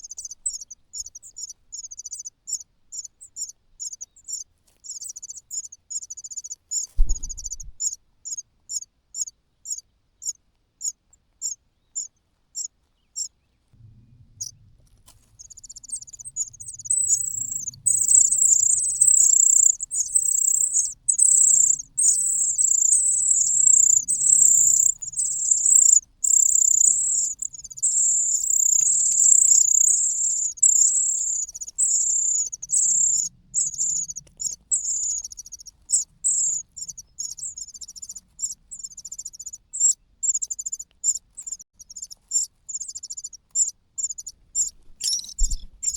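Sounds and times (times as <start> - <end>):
chick squeaking begging calls: 15.4 - 45.9.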